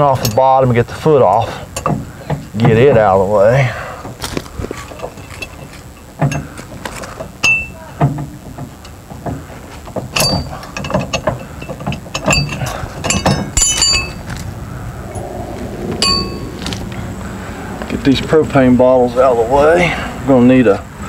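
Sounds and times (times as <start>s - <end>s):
metal clinks and knocks: 4.8s - 14.5s.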